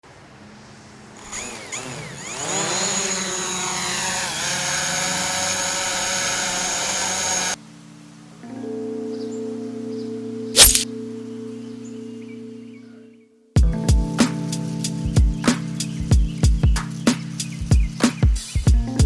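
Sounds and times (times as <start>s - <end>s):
drone propellers buzzing: 1.1s - 7.6s.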